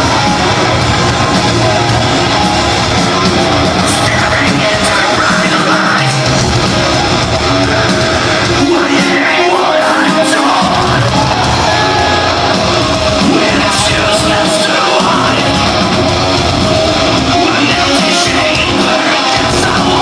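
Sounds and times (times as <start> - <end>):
bass: 0.0 - 20.0
distorted electric guitars: 0.0 - 20.0
drums playing loudly: 0.0 - 20.0
harsh yelled vocals: 0.0 - 20.0.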